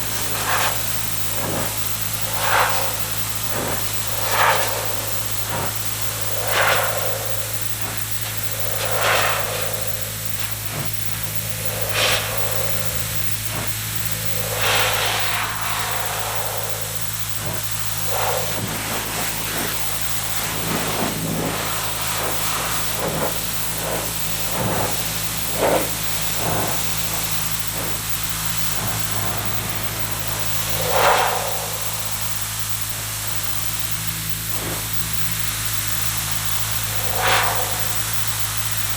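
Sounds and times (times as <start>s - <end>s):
pressure washer motor hum: 0.0s - 38.9s
spray jet hissing: 0.0s - 38.9s.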